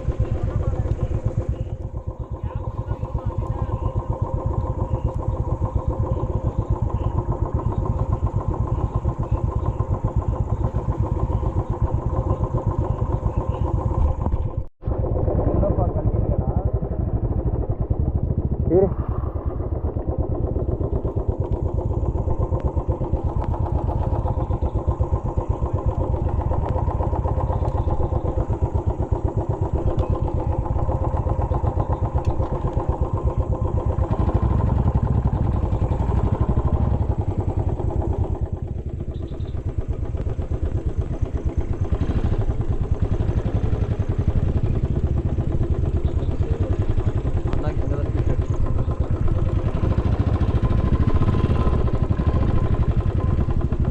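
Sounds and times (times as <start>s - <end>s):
motorcycle engine running: 0.0s - 53.9s.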